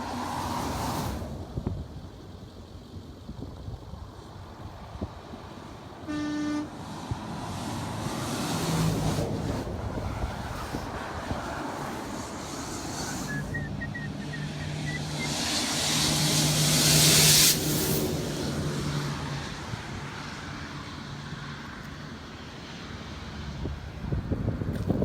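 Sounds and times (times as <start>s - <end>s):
engine hum: 0.0s - 25.0s
truck driving past: 6.6s - 21.7s.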